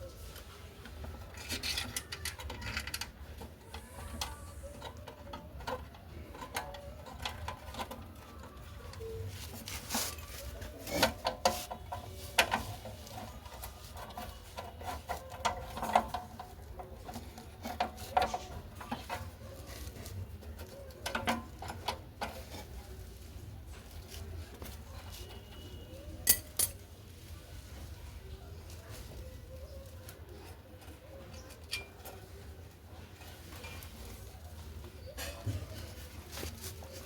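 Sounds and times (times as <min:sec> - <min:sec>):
metal tools clicking and scraping: 0:00.4 - 0:23.1, 0:23.8 - 0:27.0, 0:29.8 - 0:32.5.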